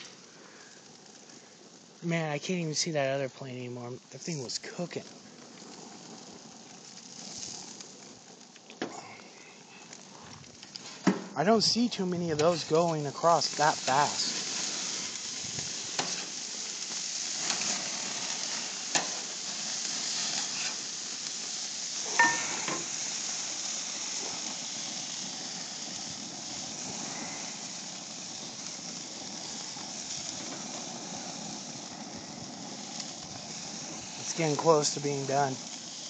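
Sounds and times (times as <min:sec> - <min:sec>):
patties sizzling on grill: 0:00.0 - 0:36.0
metallic clink: 0:22.2 - 0:22.8.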